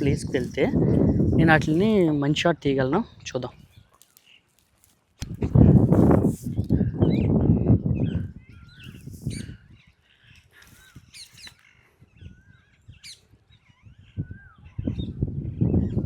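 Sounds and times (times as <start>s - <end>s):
birds chirping: 5.5s - 16.0s
shrill high sweeping bird calls: 8.0s - 15.2s.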